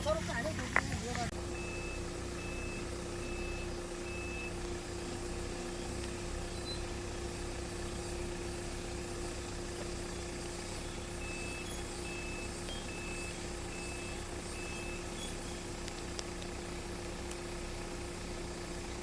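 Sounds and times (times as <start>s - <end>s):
vehicle engine rumble: 0.0s - 19.0s
electronic warning beep: 1.4s - 4.6s, 5.2s - 16.7s.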